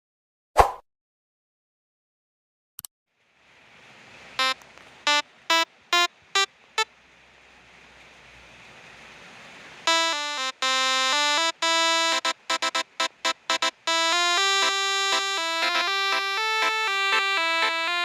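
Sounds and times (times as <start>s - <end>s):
steady hiss: 3.1s - 18.0s
multi-trumpet bus air horn: 9.9s - 18.0s.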